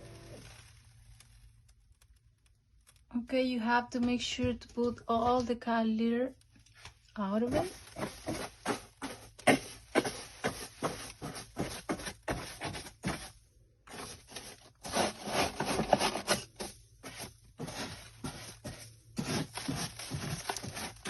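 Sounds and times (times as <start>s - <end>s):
cat litter scraping and rattling: 7.5s - 13.3s, 13.9s - 21.0s.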